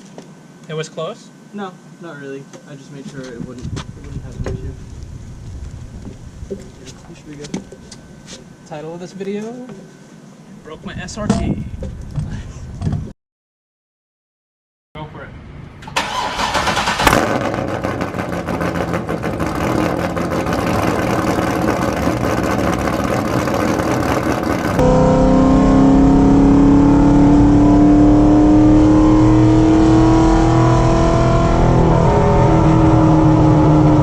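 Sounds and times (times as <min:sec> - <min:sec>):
car engine running: 0:16.4 - 0:34.0.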